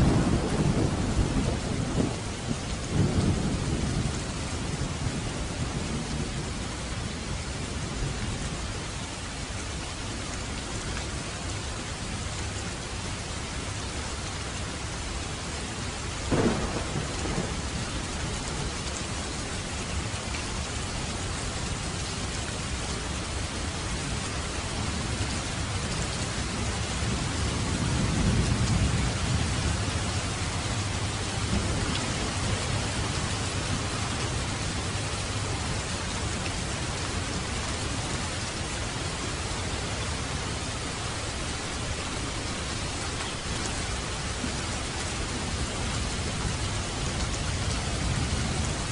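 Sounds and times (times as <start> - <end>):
low thunder rumble: 0.0 - 8.6, 16.1 - 48.9
heavy rain falling: 0.0 - 48.9
sharp thunderclap: 16.3 - 17.8.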